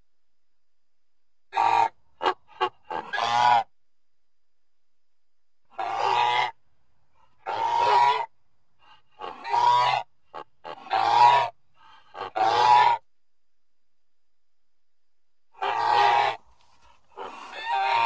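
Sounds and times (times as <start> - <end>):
creature calls: 9.1 - 13.0, 15.6 - 16.4, 17.1 - 18.0.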